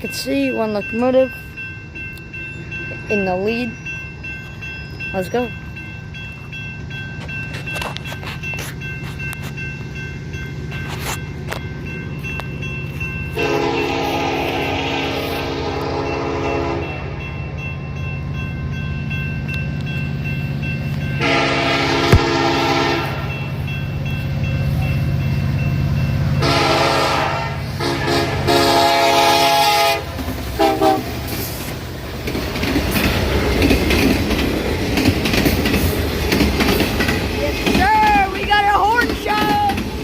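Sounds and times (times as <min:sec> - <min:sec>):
locomotive air horn blasts: 0:13.4 - 0:17.1, 0:21.2 - 0:23.3, 0:26.4 - 0:31.2
train wheels clattering: 0:30.1 - 0:40.0.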